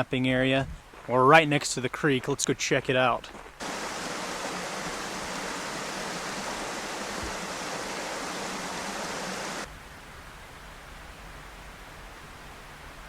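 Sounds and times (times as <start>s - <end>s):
creek water rushing: 3.6s - 9.7s
faint hiss: 3.6s - 13.0s.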